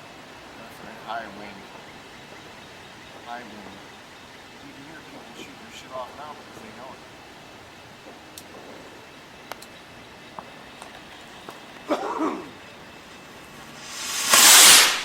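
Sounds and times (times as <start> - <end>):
distant fireworks popping: 0.0 - 15.0
firework rushing hiss: 13.5 - 15.0.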